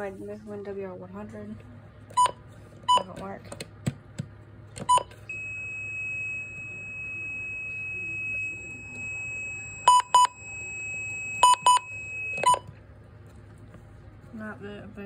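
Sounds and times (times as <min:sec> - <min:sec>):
short key-press beeps: 0:04.8 - 0:05.2, 0:11.4 - 0:12.7.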